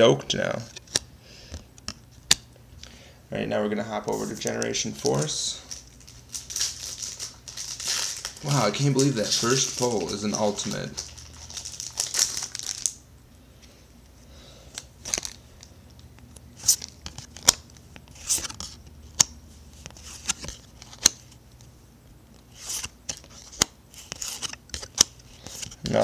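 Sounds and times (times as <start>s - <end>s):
cards rustling: 4.1s - 13.0s, 14.7s - 21.4s, 22.4s - 26.0s
foil wrapper crinkling and tearing: 5.1s - 13.0s
cards snapping: 22.5s - 26.0s.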